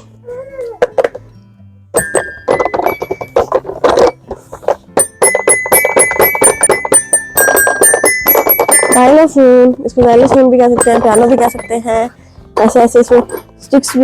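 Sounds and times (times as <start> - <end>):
toy xylophone notes: 2.0 - 4.2, 5.0 - 9.3, 10.8 - 12.1.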